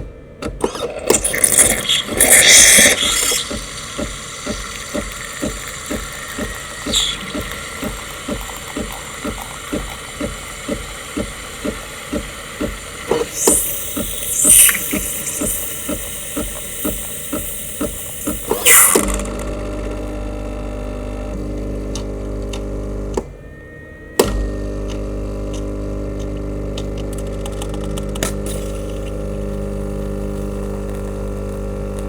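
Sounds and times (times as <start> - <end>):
coffee machine pump pulsing: 0.0 - 23.5, 24.2 - 32.0
coffee machine hissing: 0.0 - 23.6, 24.2 - 32.0.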